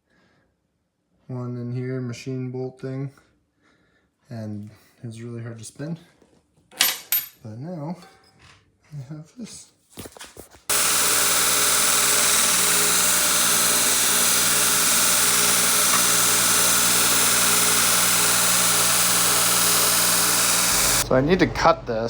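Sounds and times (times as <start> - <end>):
belt grinder whirring: 10.7 - 21.1.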